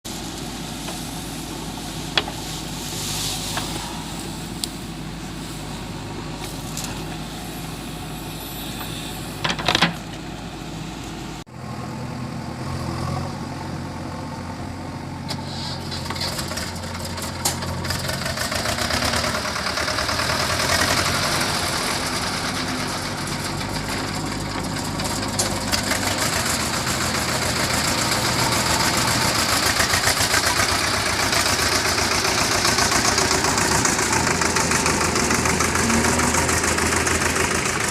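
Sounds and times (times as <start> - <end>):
diesel engine running: 0.1 - 37.9.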